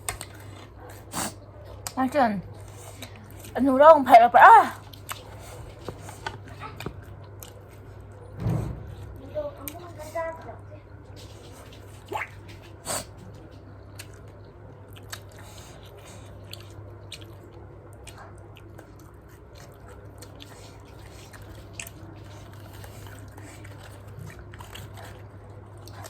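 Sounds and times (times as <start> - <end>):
chewing cabbage with crunches: 4.8 - 8.4, 11.1 - 26.0.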